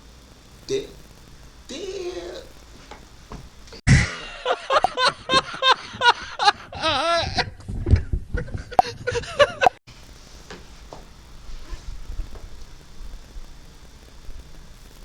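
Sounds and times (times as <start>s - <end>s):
person laughing loudly: 3.9s - 9.8s.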